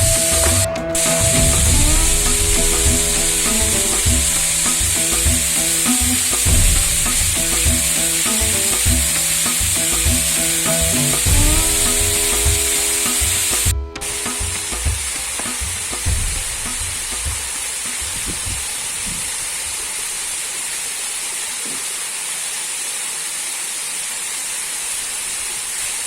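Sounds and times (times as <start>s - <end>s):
background music with steady beat: 0.0s - 18.8s
waterfall rushing: 0.0s - 26.0s.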